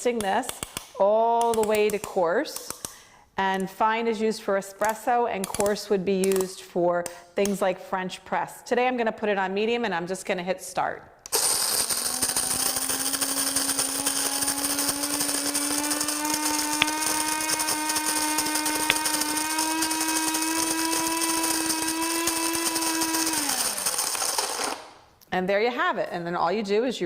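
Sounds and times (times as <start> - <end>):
coffee grinder motor humming: 11.4 - 24.9
sharp ticks: 14.1 - 21.5.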